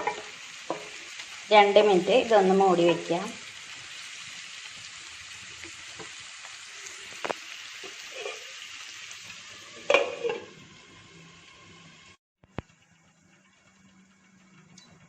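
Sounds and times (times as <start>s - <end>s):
metal lid clanking on pan: 0.0s - 1.0s, 7.8s - 8.5s, 9.8s - 10.6s
prawns sizzling in a pan: 0.0s - 12.2s.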